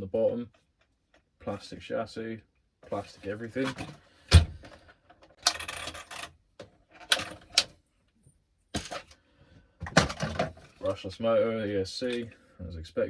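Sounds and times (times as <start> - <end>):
plastic toy truck rattling: 5.2 - 6.3, 9.8 - 10.8.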